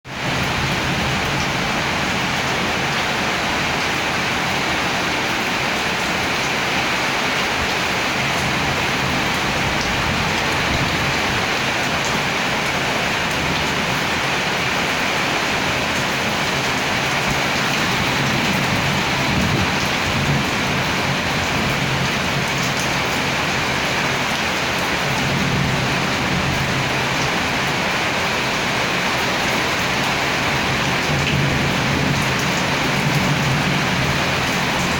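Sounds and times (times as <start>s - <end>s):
heavy rain pouring: 0.0s - 34.9s
thunder rumbling: 16.4s - 23.8s.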